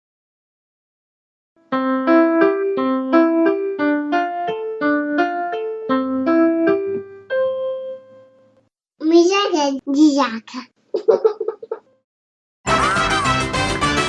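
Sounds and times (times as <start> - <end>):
bright keyboard tune: 1.7 - 8.6.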